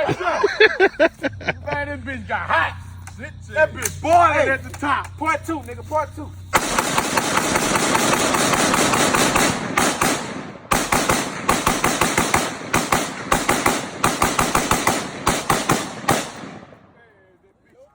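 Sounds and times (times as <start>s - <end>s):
rapid semi-automatic gunfire: 6.5s - 17.0s.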